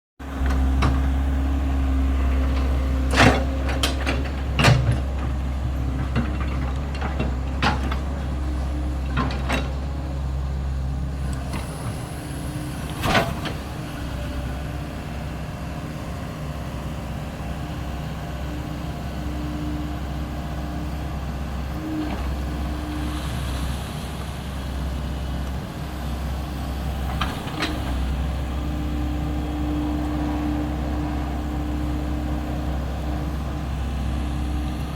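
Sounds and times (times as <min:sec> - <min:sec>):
excavator diesel engine running: 0:00.2 - 0:34.9.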